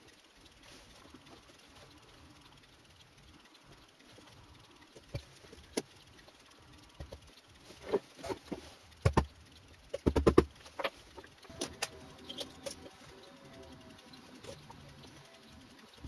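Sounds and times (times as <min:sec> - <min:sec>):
parts and tools clicking: 0:00.0 - 0:16.0.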